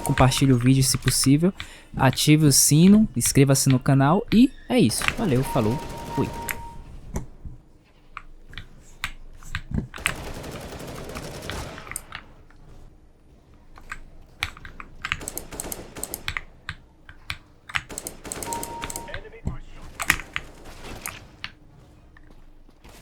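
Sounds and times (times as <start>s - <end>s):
short beep: 0.0s - 0.6s, 5.2s - 7.0s, 18.4s - 19.3s
mechanical keyboard typing: 5.0s - 6.8s, 13.9s - 19.2s.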